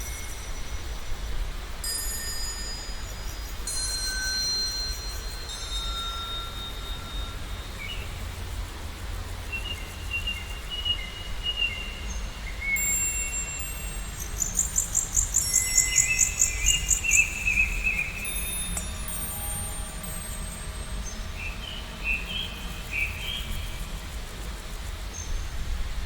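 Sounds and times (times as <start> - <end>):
birds singing: 9.6 - 23.9
rapid high chirps: 12.8 - 23.6.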